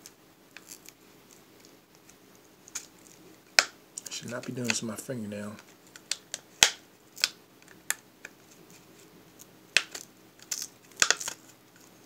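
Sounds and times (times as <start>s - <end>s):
plastic shell clips snapping: 9.8s - 11.4s.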